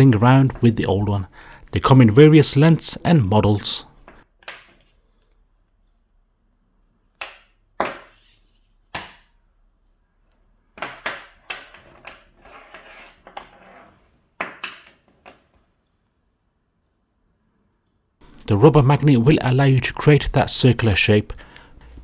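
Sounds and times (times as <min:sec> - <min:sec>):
cables rustling: 0:18.2 - 0:22.0.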